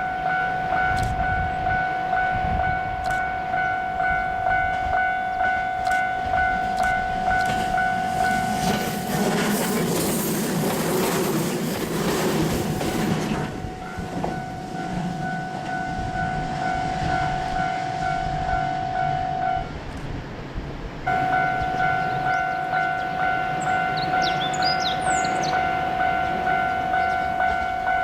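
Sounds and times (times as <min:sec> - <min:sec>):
crossing warning bell ringing: 0:00.0 - 0:09.9, 0:12.6 - 0:20.0, 0:21.1 - 0:28.0
train wheels clattering on rails: 0:03.1 - 0:18.6.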